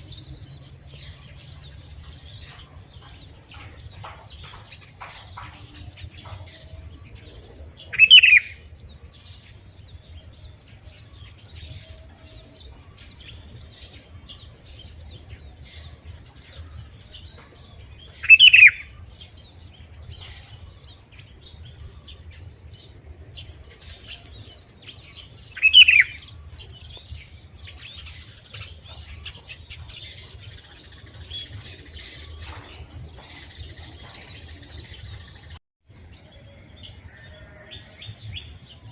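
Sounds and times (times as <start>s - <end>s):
bulbul calling: 0.0s - 9.0s, 18.0s - 19.3s, 23.4s - 35.6s
faint bird chirps: 0.0s - 35.6s
high insect drone: 0.0s - 38.9s.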